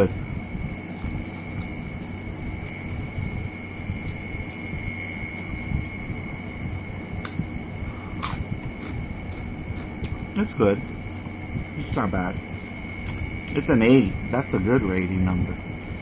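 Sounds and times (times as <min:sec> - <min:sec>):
background hum: 0:00.0 - 0:16.0
thin high whine: 0:00.0 - 0:16.0
chewing and mouth sounds: 0:00.8 - 0:03.1, 0:07.2 - 0:10.4.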